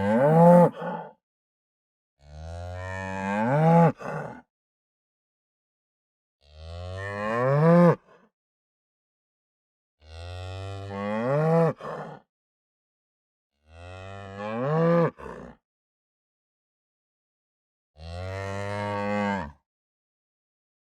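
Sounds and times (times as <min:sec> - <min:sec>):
cow mooing: 0:00.0 - 0:00.8, 0:10.0 - 0:11.8, 0:18.0 - 0:19.6.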